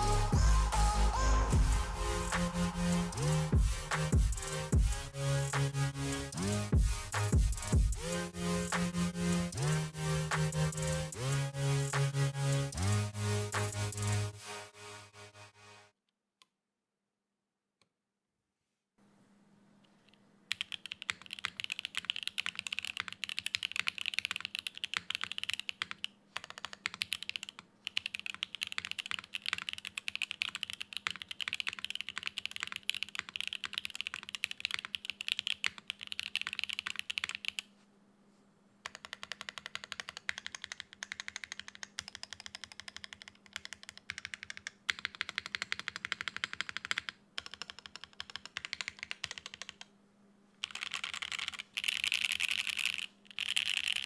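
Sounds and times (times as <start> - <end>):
rapid mechanical keyboard typing: 20.5 - 37.7, 38.8 - 49.9, 50.6 - 54.0.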